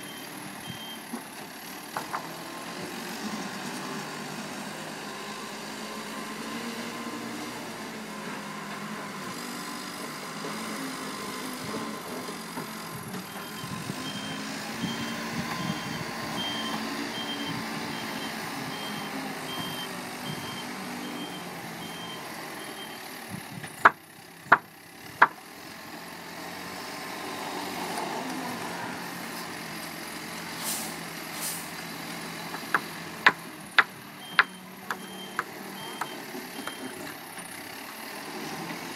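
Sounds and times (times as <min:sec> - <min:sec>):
reversing alarm beeping: 0:00.0 - 0:01.0, 0:13.3 - 0:23.0, 0:33.7 - 0:37.0
truck engine running: 0:11.6 - 0:25.6, 0:29.6 - 0:38.1
sharp knocks: 0:23.8 - 0:25.4.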